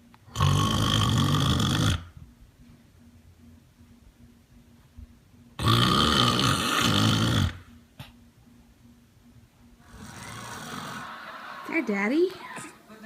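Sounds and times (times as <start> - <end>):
loud rasping snore: 0.3 - 2.1, 5.6 - 7.7, 9.8 - 11.1.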